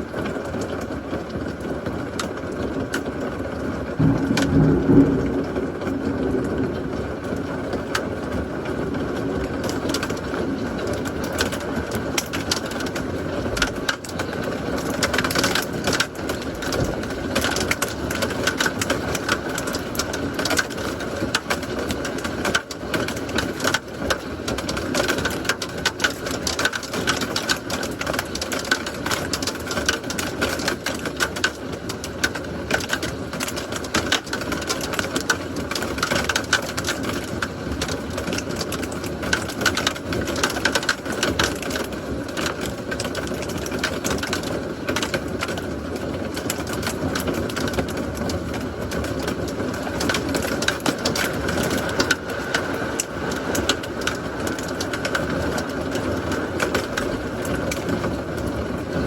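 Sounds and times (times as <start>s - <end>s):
rain falling: 0.0s - 59.0s
raindrops ticking on hard surface: 0.0s - 59.0s.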